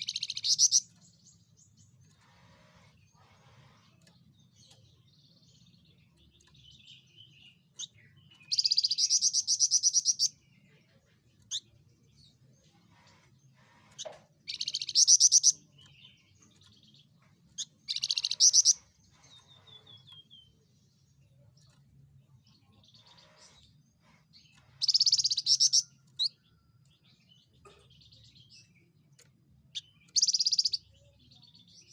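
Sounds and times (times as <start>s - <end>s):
bird chattering rattles: 14.0s - 15.6s, 17.6s - 19.5s.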